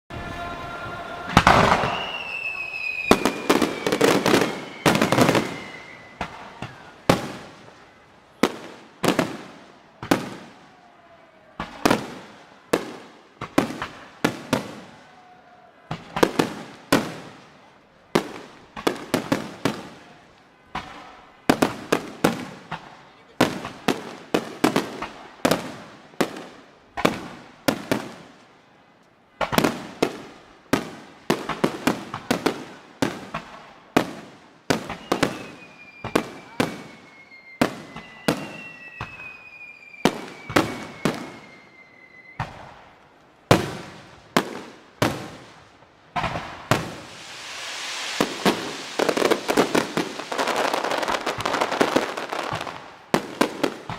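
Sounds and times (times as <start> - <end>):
fireworks bursting with echo: 0.1 - 28.7, 29.3 - 53.9.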